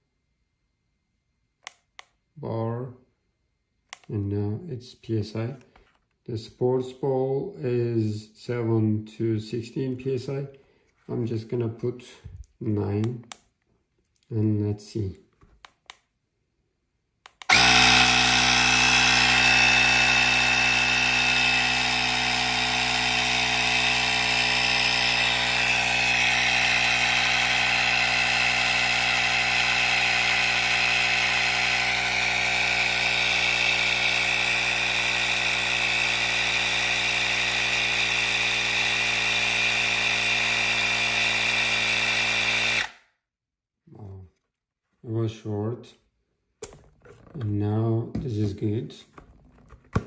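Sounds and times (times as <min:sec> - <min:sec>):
electric air compressor running: 0:17.5 - 0:42.9.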